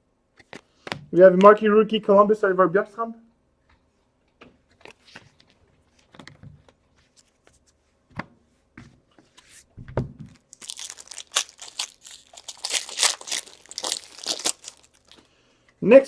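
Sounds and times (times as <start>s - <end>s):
card pack wrapper tearing: 10.4s - 15.2s.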